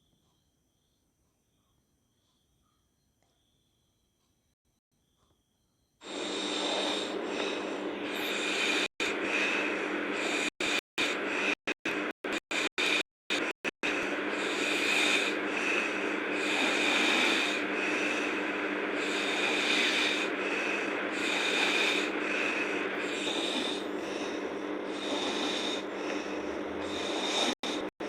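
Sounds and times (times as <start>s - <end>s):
girl snoring: 6.0s - 28.0s.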